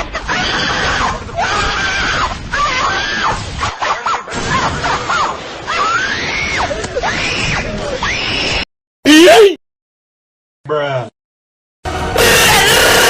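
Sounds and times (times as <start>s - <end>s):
child screaming: 9.1s - 9.6s.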